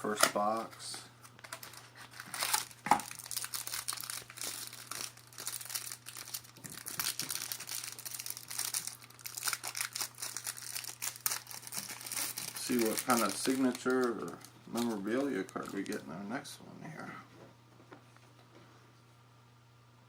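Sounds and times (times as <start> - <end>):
plastic wrapping crinkling: 1.3 - 16.1.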